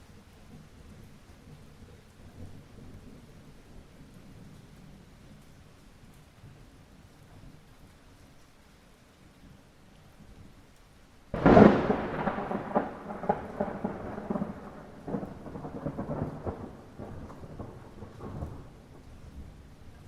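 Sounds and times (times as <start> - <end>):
light rain: 0.0 - 20.0
thunder crack and rumble: 11.3 - 20.0.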